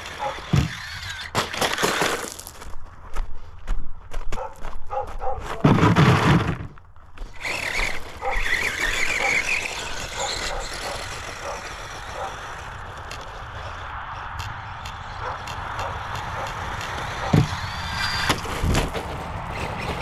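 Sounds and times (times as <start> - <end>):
loud crunching thump: 5.5 - 6.8, 16.9 - 20.0
electric motor whine: 7.4 - 18.8.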